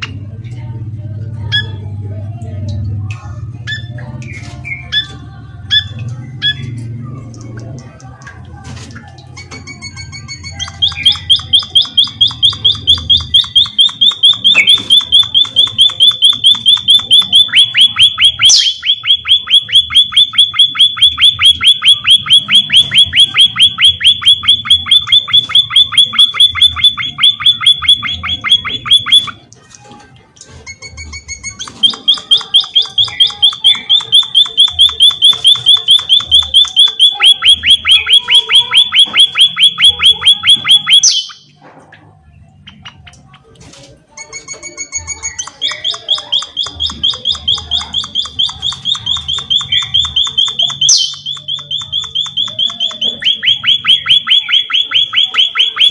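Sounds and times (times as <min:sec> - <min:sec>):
bird high chirps: 0:09.2 - 0:29.4, 0:30.9 - 0:41.6, 0:44.6 - 0:55.9.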